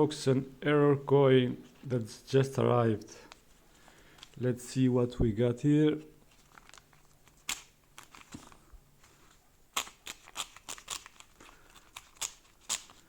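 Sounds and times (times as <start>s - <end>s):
paper envelope crackling: 6.3s - 13.0s.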